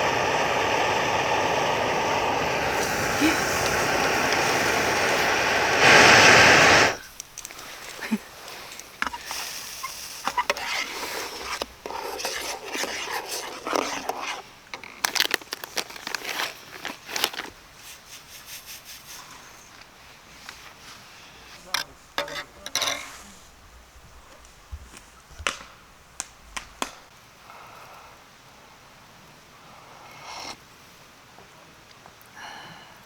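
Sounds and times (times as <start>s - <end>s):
loud rushing noise: 0.0s - 7.0s
campfire crackling and popping: 0.0s - 9.4s, 24.4s - 27.1s.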